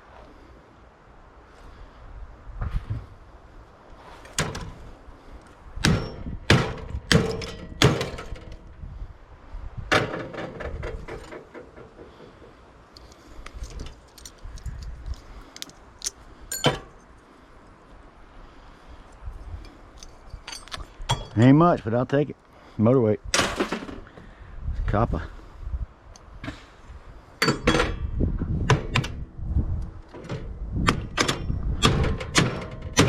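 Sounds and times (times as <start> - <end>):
metal knocks and clanks: 5.8 - 8.7, 9.9 - 12.6, 27.4 - 28.1
light clicks and rattles: 10.8 - 17.2.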